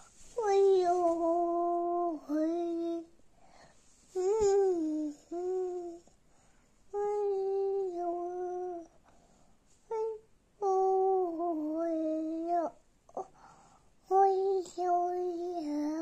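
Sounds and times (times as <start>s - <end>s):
small child humming: 0.0s - 3.1s, 4.2s - 6.2s, 7.0s - 9.0s, 9.9s - 13.4s, 14.1s - 16.0s.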